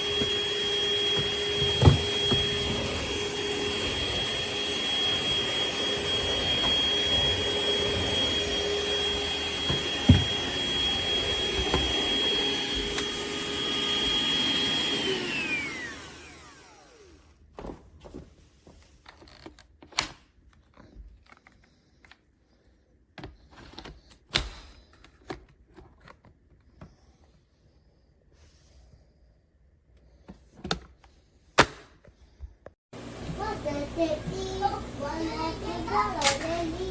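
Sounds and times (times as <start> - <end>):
vacuum being handled: 0.0 - 16.4, 34.2 - 36.9
vacuum cleaner whining: 0.0 - 17.4, 32.9 - 36.9.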